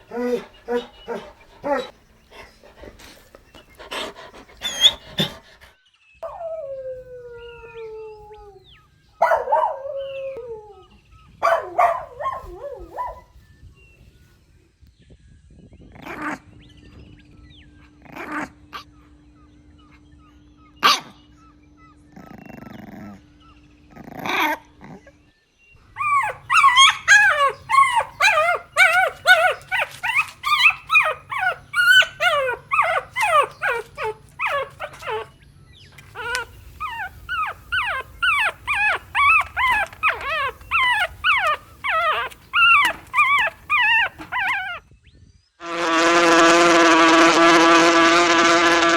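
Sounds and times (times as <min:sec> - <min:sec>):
puppy yelping and whining: 0:00.0 - 0:05.7, 0:26.0 - 0:35.3, 0:36.0 - 0:44.8.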